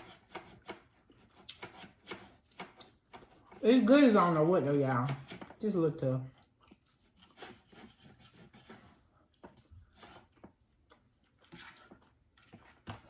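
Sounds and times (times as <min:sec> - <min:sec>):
close-up chewing: 0:00.0 - 0:05.6, 0:06.2 - 0:13.0.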